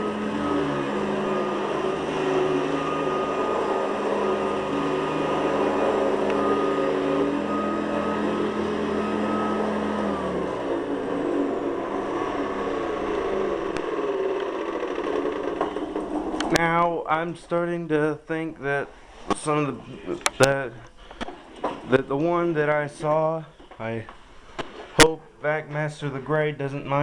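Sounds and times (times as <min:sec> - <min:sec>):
upright vacuum cleaner running: 0:00.0 - 0:16.6.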